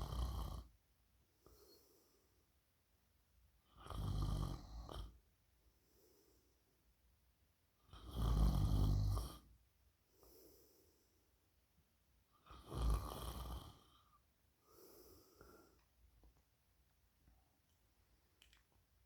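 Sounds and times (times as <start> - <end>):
person snoring: 0.0 - 0.7, 8.0 - 9.4, 12.5 - 14.0
soft breathing: 1.4 - 2.4, 10.1 - 11.4, 13.7 - 16.0.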